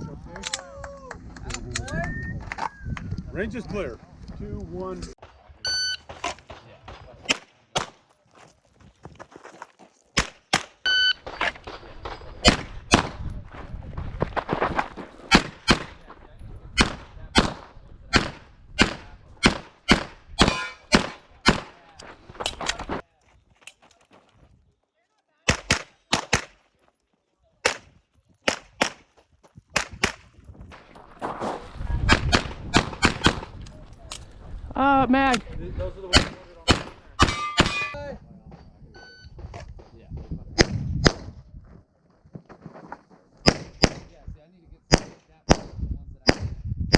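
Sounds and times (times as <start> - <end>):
short ringing tone: 5.7 - 6.0, 39.0 - 39.4
handgun shots: 18.2 - 21.6, 36.2 - 38.0.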